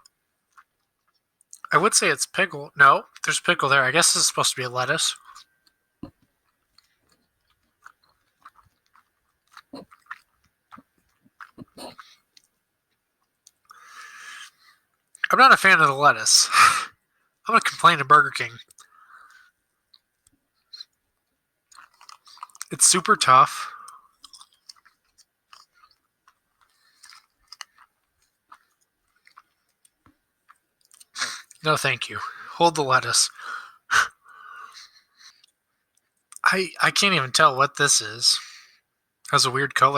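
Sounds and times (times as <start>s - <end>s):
chewing gummy candy: 0.0s - 1.7s, 5.1s - 15.3s, 18.5s - 31.6s
person breathing: 13.7s - 14.8s, 18.9s - 19.5s, 32.2s - 32.6s, 33.4s - 35.4s.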